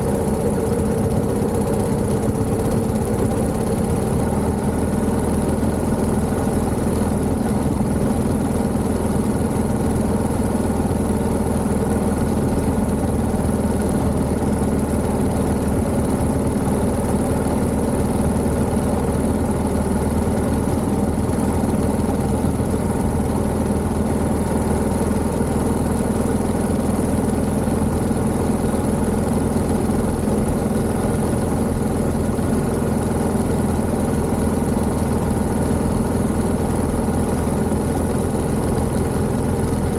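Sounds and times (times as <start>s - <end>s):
motorcycle engine running steadily: 0.0s - 39.9s.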